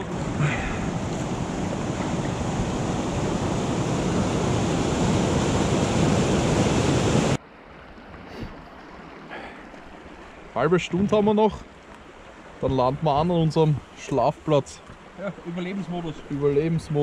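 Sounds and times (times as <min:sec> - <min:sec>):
wind buffeting microphone: 0:00.0 - 0:07.4
rushing river water: 0:00.0 - 0:17.0.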